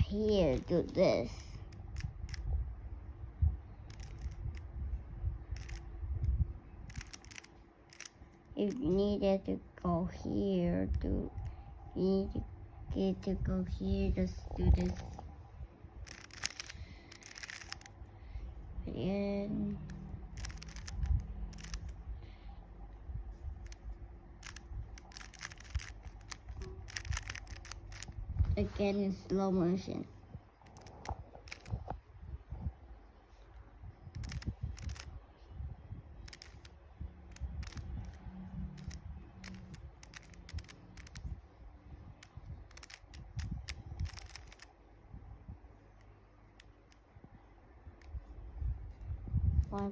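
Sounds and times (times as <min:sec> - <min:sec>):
puzzle cube layers clicking: 0:00.0 - 0:02.5, 0:03.8 - 0:04.8, 0:05.5 - 0:09.2, 0:14.1 - 0:15.3, 0:16.0 - 0:18.0, 0:18.9 - 0:22.4, 0:23.4 - 0:28.3, 0:30.6 - 0:31.9, 0:34.1 - 0:35.1, 0:36.2 - 0:41.4, 0:42.1 - 0:44.8.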